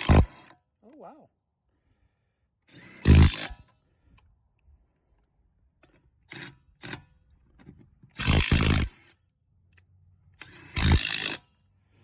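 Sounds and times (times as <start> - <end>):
impact wrench hammering: 0.0 - 0.5.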